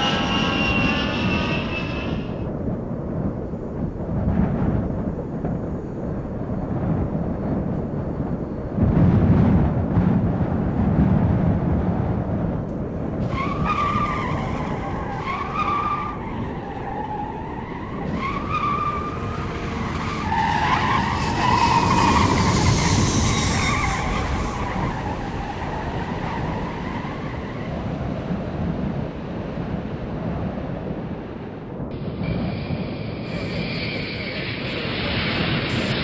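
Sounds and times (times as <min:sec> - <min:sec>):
tyre screeching: 0:00.0 - 0:02.5, 0:13.2 - 0:27.6
jet engines rumbling: 0:00.0 - 0:36.0
wind: 0:00.0 - 0:36.0.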